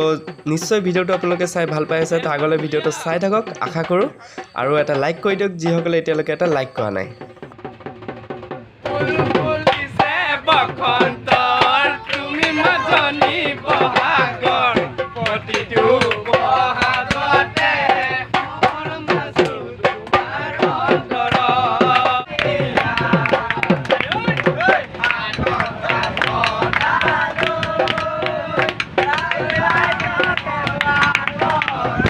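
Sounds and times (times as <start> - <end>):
dhol drum strokes: 0.0 - 32.0
group singing folk song: 8.8 - 32.0.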